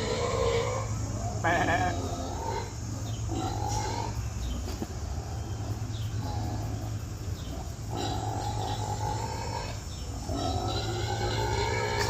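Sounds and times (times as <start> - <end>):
farm animals calling: 0.0 - 12.0
steady low hum: 0.0 - 12.0.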